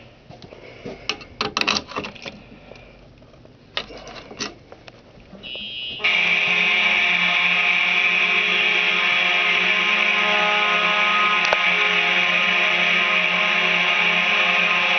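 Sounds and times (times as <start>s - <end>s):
loud steady alarm tone: 5.4s - 14.9s.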